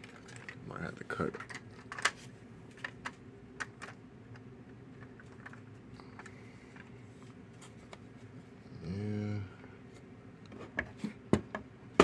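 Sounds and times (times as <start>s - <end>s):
small parts clicking and tapping: 0.0s - 6.9s
low steady hum: 0.0s - 12.0s.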